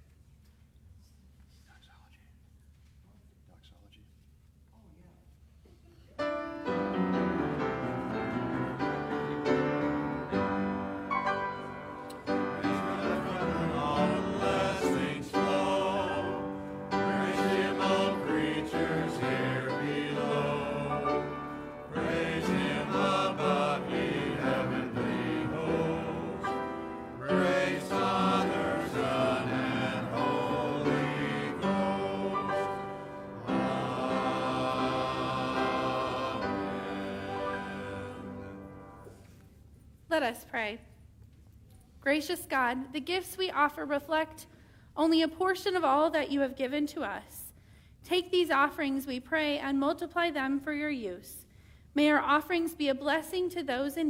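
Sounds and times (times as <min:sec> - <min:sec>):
musical accompaniment: 0:06.2 - 0:39.3
voices singing a hymn: 0:06.7 - 0:39.3.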